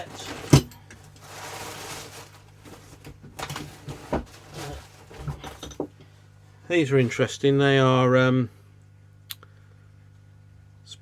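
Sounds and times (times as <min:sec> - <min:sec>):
packaging rustle: 0:00.0 - 0:05.7.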